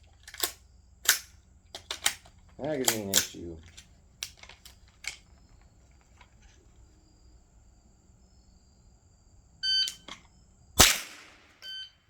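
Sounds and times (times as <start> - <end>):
small clicks: 0.0 - 6.6, 9.8 - 10.3
shot timer electronic beep: 9.6 - 10.0, 11.6 - 12.0.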